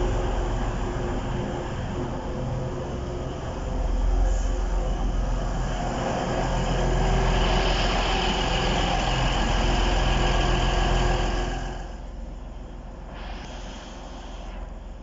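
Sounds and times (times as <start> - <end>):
diesel train engines humming: 0.0 - 13.1
hiss: 5.6 - 12.1, 13.0 - 15.0.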